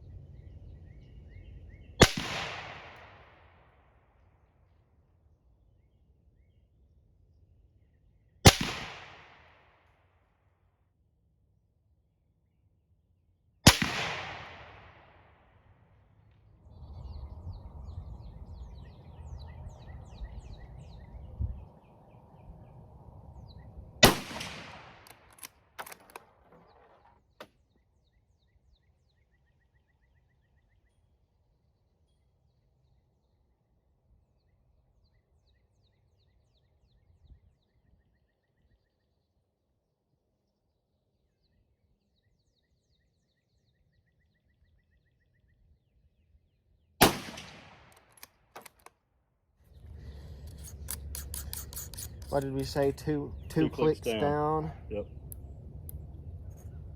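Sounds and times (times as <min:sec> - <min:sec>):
rifle shots with echo: 0:02.0 - 0:03.7, 0:08.5 - 0:09.8, 0:13.7 - 0:15.4, 0:24.0 - 0:27.0, 0:47.0 - 0:48.7
birds chirping: 0:16.6 - 0:24.1, 0:49.7 - 0:56.9
short clicks: 0:47.9 - 0:48.9.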